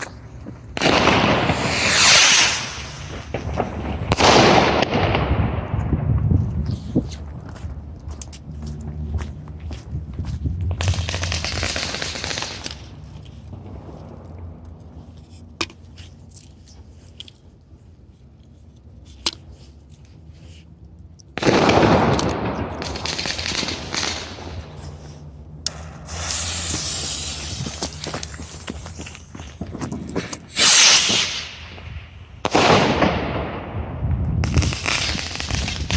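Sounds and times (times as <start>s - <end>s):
firework bangs: 0.7s - 6.3s, 10.8s - 14.2s, 21.4s - 25.0s, 25.7s - 29.7s, 30.5s - 35.9s
rocket rushing hiss: 0.8s - 5.0s, 25.7s - 29.3s, 30.5s - 31.8s.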